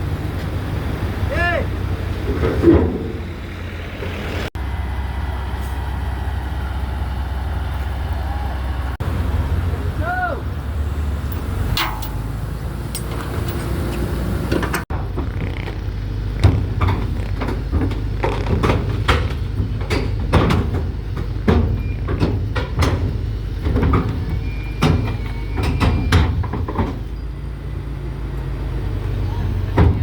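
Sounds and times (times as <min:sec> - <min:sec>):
heavy diesel engine running: 0:00.0 - 0:30.0
metallic clanks and knocks: 0:02.2 - 0:03.5, 0:11.2 - 0:15.4, 0:16.4 - 0:27.1.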